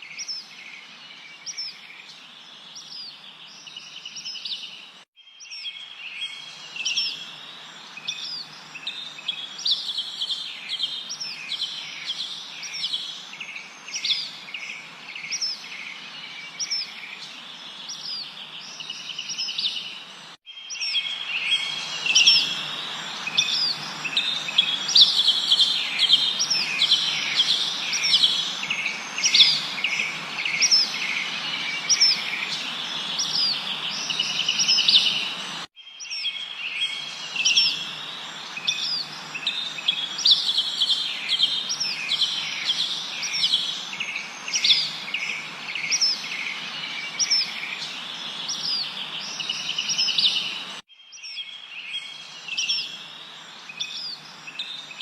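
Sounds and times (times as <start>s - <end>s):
songbirds chirping and trilling: 0.0s - 55.0s
steady background hiss: 5.8s - 35.7s, 36.4s - 50.8s.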